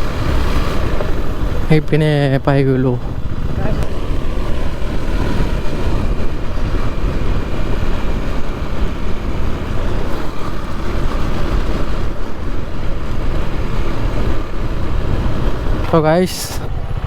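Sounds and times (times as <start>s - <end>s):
motorcycle engine running: 0.0s - 17.0s
wind on microphone: 2.9s - 15.9s.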